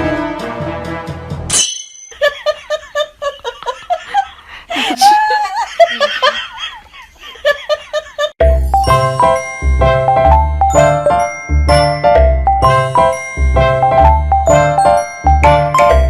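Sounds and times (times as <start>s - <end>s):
music: 0.0s - 1.6s, 8.4s - 16.0s
high-pitched laughter: 2.2s - 8.4s.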